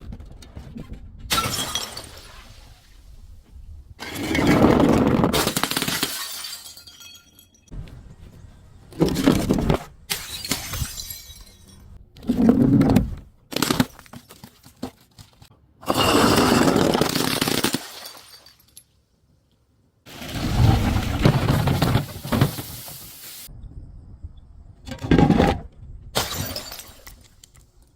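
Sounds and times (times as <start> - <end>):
glass bottles crashing: 1.3 - 2.4, 4.0 - 7.7, 10.1 - 12.0, 15.8 - 18.8, 26.2 - 27.3
glass shards tinkling: 6.2 - 7.7.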